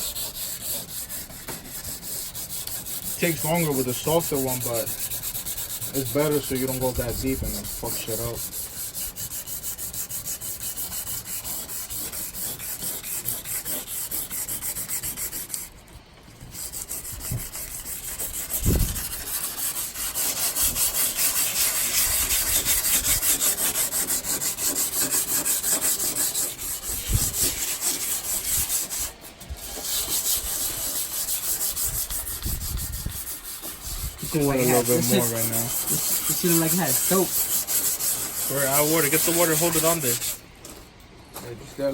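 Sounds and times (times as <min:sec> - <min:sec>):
sandpaper rubbing back and forth: 0:00.0 - 0:40.4.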